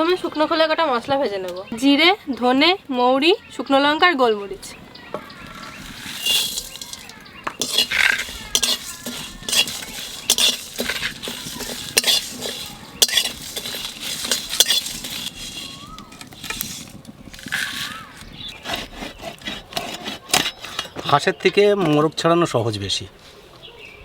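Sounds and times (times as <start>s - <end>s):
spatula scraping spices in pan: 5.3s - 21.9s
metal clinking on pan: 5.8s - 18.0s.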